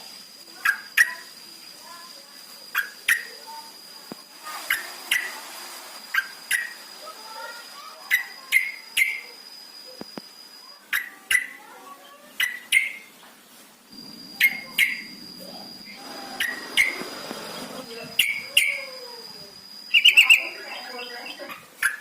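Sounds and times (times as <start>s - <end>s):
high insect trill: 0.0s - 22.0s
bird giving sharp calls: 14.0s - 18.8s.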